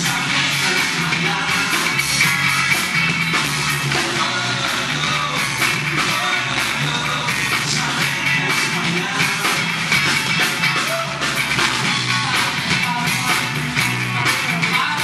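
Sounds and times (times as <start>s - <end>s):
live rock band playing: 0.0s - 15.0s
steady drum beat: 0.0s - 15.0s.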